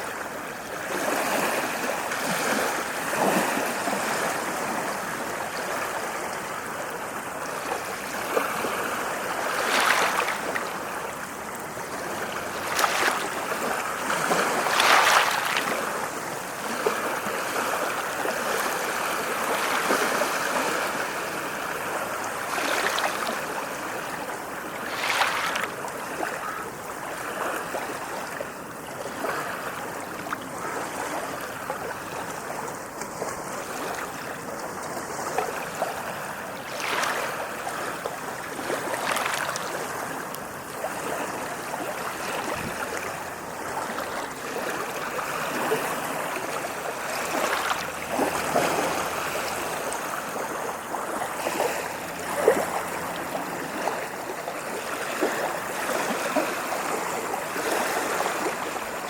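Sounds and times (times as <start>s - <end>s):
ocean waves washing on shore: 0.0s - 59.0s.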